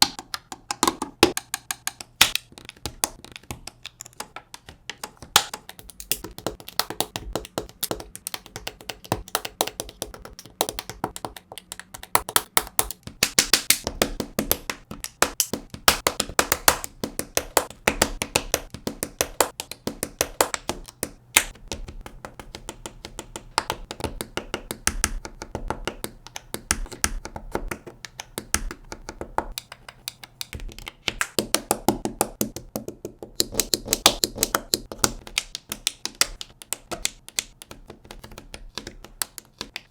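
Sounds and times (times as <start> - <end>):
plastic bricks clicking together: 0.0 - 21.9.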